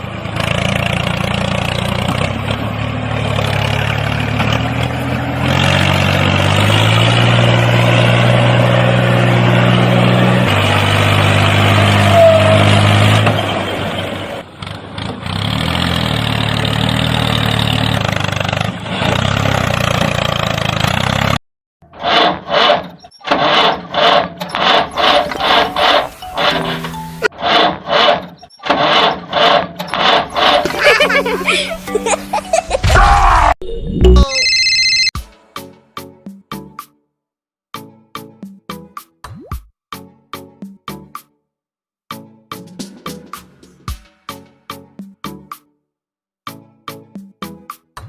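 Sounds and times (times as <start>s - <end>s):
engine humming: 0.0s - 21.4s, 22.7s - 32.7s.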